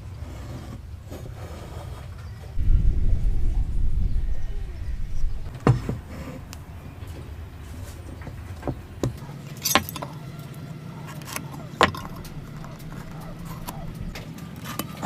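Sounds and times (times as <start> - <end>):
steady low hum: 2.6 - 14.7
woodworking tools knocking: 11.2 - 14.3.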